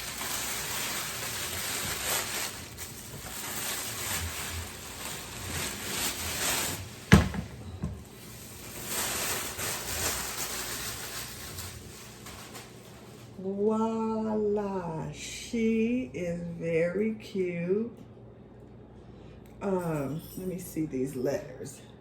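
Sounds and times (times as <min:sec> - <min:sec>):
packaging rustling: 0:00.0 - 0:13.4.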